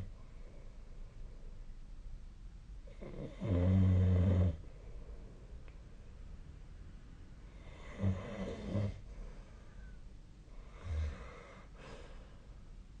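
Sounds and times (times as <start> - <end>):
person snoring: 2.9 - 4.6, 7.6 - 9.0, 10.6 - 12.0
soft breathing: 4.6 - 6.2, 7.4 - 13.0.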